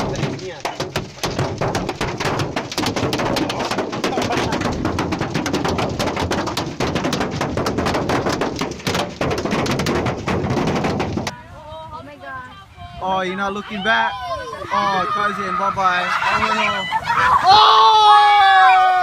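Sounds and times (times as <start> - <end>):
precipitation pelting hard surface: 0.0 - 11.4.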